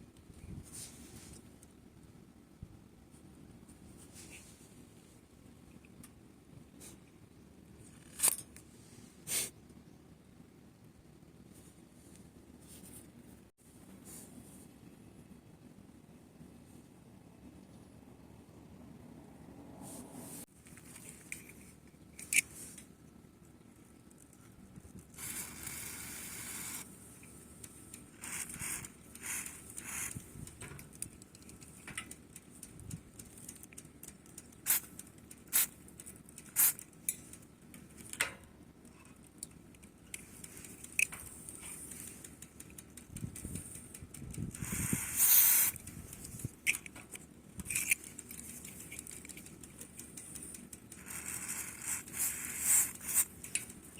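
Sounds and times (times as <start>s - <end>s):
sharp clicks: 25.1s - 53.9s
aerosol spray hissing: 36.6s - 36.8s, 44.6s - 45.8s, 51.2s - 53.4s.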